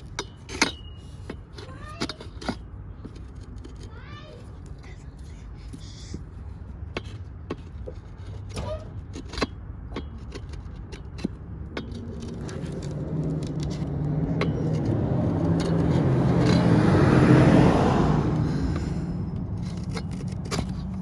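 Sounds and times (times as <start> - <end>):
vehicle engine approaching: 11.3 - 21.0.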